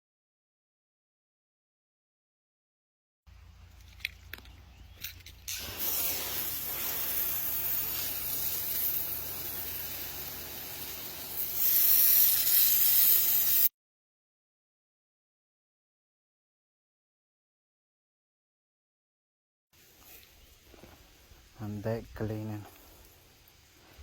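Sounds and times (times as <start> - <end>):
pressure washer spraying water: 5.4 - 13.7.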